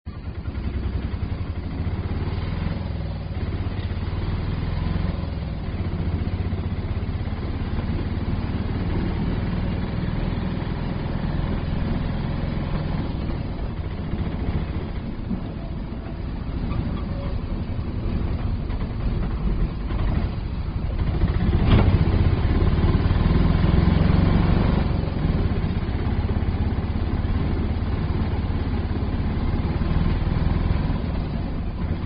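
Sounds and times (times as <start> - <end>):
auto rickshaw engine puttering: 0.1 - 32.0.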